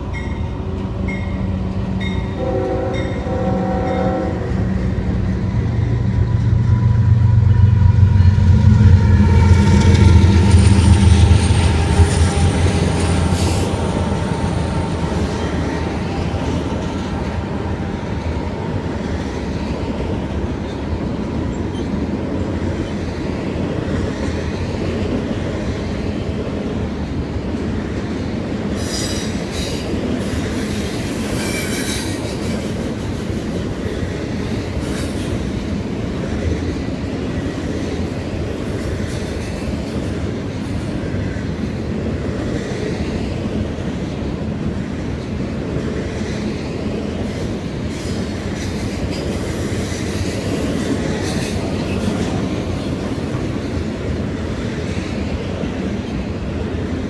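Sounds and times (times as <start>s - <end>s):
locomotive engine rumble: 0.0s - 21.3s
train horn chord: 0.9s - 14.9s
train wheel clatter: 27.6s - 57.0s.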